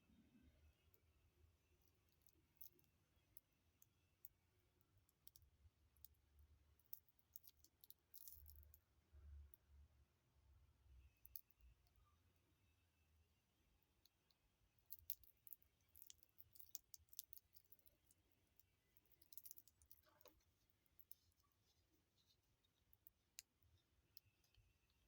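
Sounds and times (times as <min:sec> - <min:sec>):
watch bracelet clicking: 0:14.9 - 0:18.2, 0:19.0 - 0:20.3.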